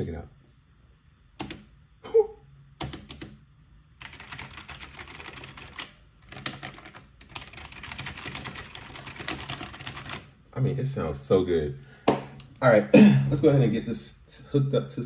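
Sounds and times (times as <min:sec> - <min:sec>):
mechanical keyboard typing: 0:01.4 - 0:01.7, 0:02.8 - 0:03.4, 0:04.0 - 0:10.3.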